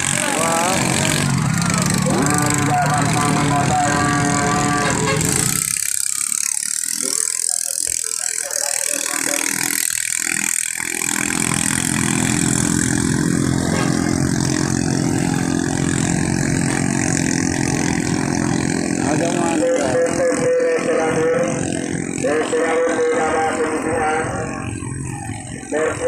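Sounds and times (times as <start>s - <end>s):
boat engines running: 0.0s - 26.0s.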